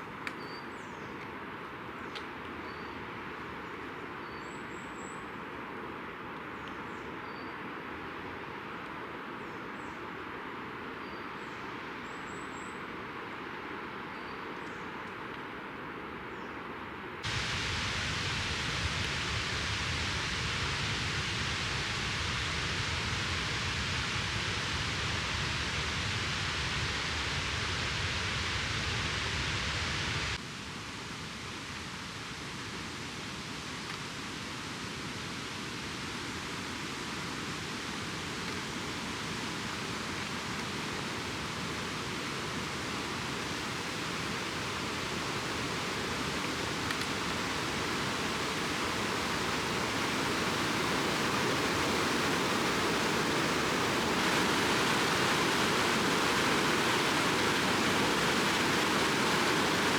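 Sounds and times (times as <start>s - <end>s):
mountain stream rushing: 17.0s - 30.4s, 33.0s - 59.9s.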